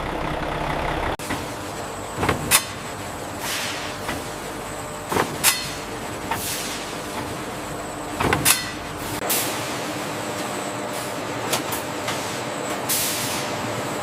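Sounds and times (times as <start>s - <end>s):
machine droning: 0.0s - 2.2s.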